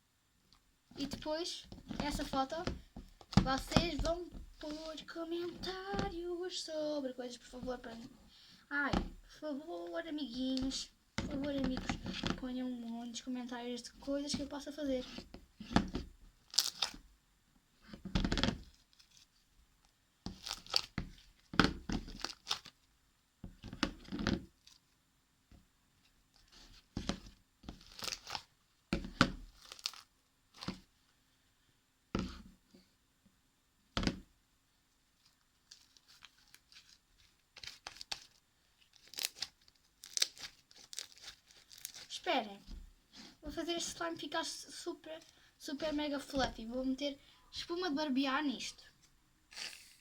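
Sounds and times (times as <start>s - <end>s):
slime squelching and tearing: 16.5s - 17.0s, 29.6s - 30.7s, 39.0s - 42.2s.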